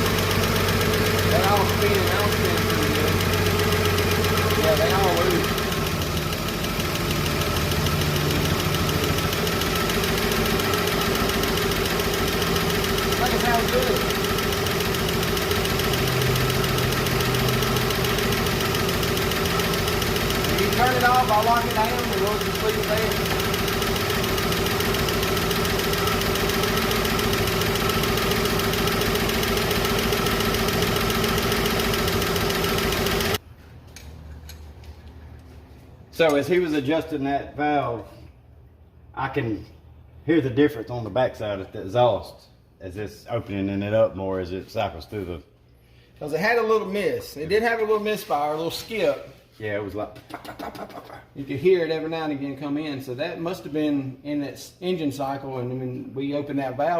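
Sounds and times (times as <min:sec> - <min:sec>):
engine idling: 0:00.0 - 0:33.4
valvetrain ticking: 0:00.1 - 0:33.4.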